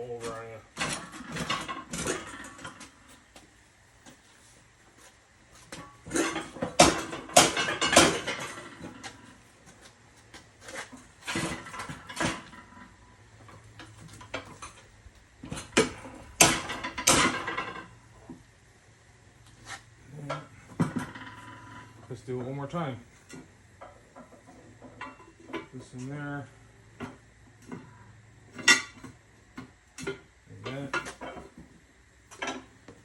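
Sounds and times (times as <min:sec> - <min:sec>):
metal clanking and scraping: 0:00.0 - 0:03.2, 0:05.6 - 0:09.8, 0:10.6 - 0:18.0, 0:19.6 - 0:26.1.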